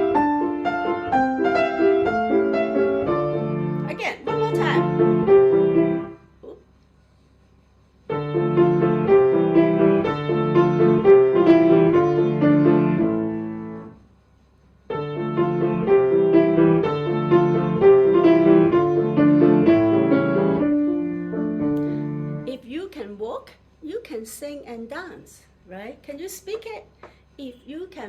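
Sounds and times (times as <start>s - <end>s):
piano playing walking tune: 0.0s - 6.3s, 8.1s - 14.0s, 14.9s - 22.6s.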